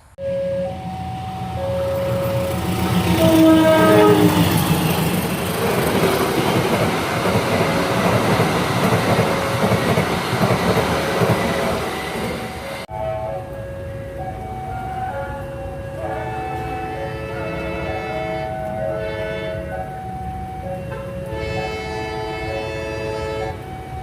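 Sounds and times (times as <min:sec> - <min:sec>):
train wheels rumbling on rails: 0:00.0 - 0:12.9
train horn blasts: 0:00.2 - 0:05.0, 0:14.9 - 0:19.9, 0:20.8 - 0:23.8.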